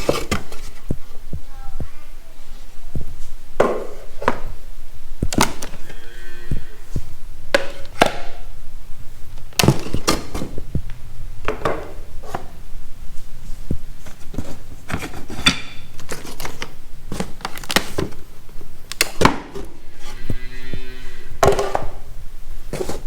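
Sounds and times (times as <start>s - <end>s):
wooden boxes knocking: 21.4s - 22.0s.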